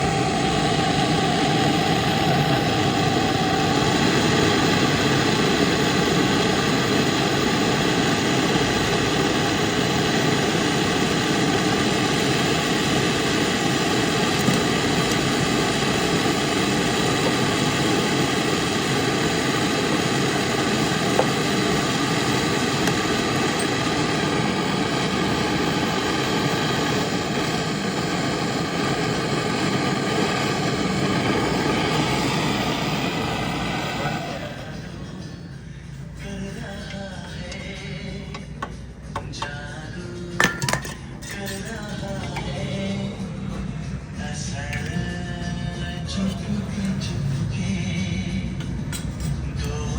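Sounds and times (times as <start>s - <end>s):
mechanical drone with whining tones: 0.0s - 39.2s.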